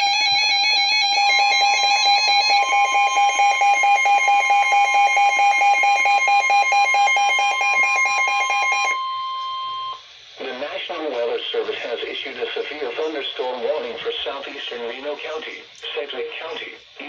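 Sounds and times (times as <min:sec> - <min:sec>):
pulsing electronic alarm tone: 0:00.0 - 0:10.0.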